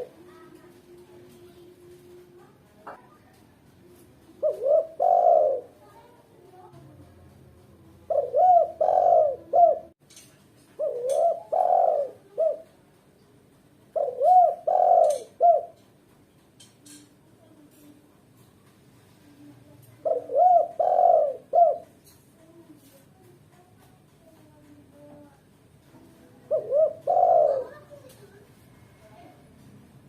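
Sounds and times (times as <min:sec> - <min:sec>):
dove cooing: 0:00.0 - 0:01.0, 0:04.4 - 0:05.9, 0:07.9 - 0:10.0, 0:10.8 - 0:12.8, 0:13.9 - 0:15.8, 0:19.9 - 0:22.6, 0:26.2 - 0:28.2.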